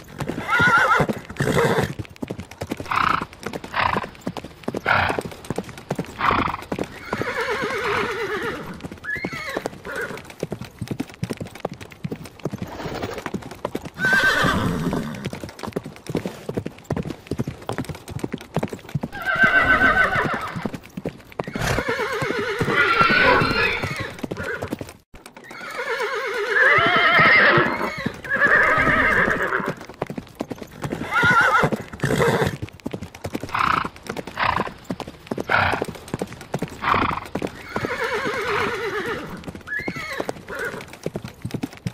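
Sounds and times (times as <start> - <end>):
horses whinnying: 0.0 - 2.0, 2.7 - 10.4, 12.5 - 15.4, 19.1 - 20.8, 21.4 - 24.8, 25.4 - 29.9, 30.6 - 32.6, 33.4 - 34.8, 35.4 - 35.9, 36.6 - 41.0
hooves clopping: 0.0 - 41.9.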